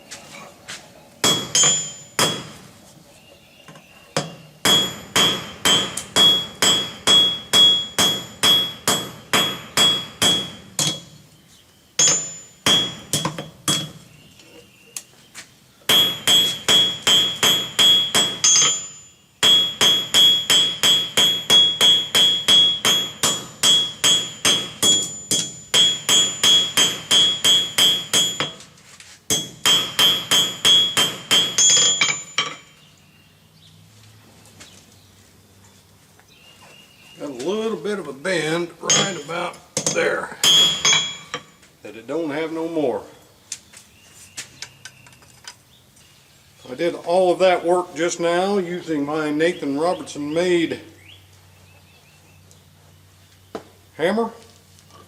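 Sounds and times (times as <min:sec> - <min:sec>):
hammer striking steel on anvil: 0:01.2 - 0:02.6, 0:04.2 - 0:11.2, 0:12.0 - 0:14.1, 0:15.9 - 0:28.7, 0:29.3 - 0:32.7, 0:38.8 - 0:41.6.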